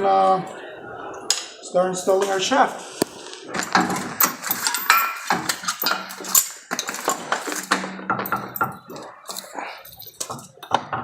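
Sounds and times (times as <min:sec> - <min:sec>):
metallic clinks of tools and parts: 0:03.6 - 0:10.7.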